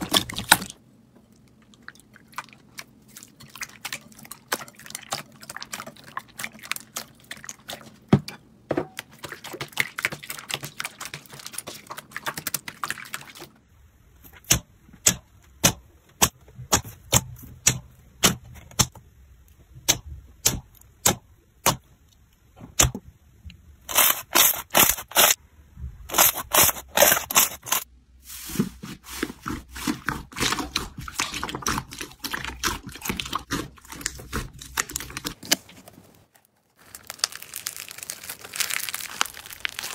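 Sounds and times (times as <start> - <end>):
slime crackling and popping: 30.4 - 39.9.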